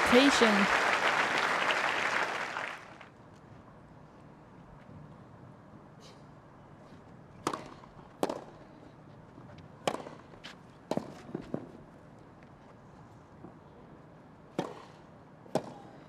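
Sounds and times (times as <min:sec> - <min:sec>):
tennis ball struck by rackets: 0:07.4 - 0:08.5, 0:09.8 - 0:10.2, 0:14.5 - 0:15.8.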